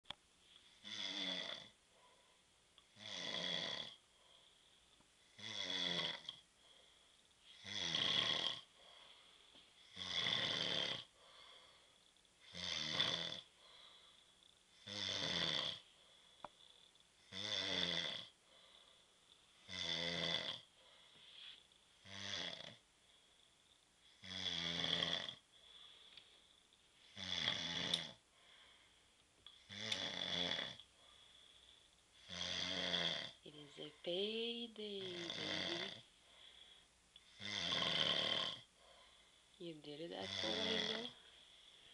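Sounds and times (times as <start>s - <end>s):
man snoring: 0.8s - 1.8s, 2.9s - 4.0s, 5.3s - 6.4s, 7.6s - 8.7s, 9.8s - 11.1s, 12.4s - 13.5s, 14.8s - 15.8s, 17.2s - 18.3s, 19.6s - 20.7s, 22.0s - 22.8s, 24.2s - 25.4s, 27.1s - 28.2s, 29.6s - 30.8s, 32.2s - 33.4s, 35.0s - 36.0s, 37.2s - 38.7s, 40.2s - 41.2s.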